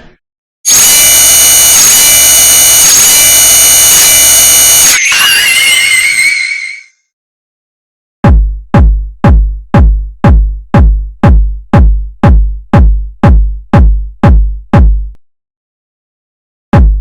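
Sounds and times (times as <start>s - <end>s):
drum machine kick drum: 8.2s - 15.2s, 16.7s - 17.0s.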